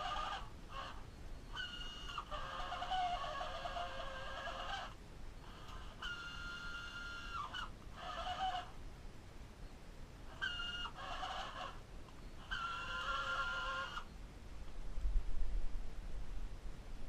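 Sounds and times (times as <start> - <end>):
chickens calling: 0.0 - 8.8, 10.3 - 14.2.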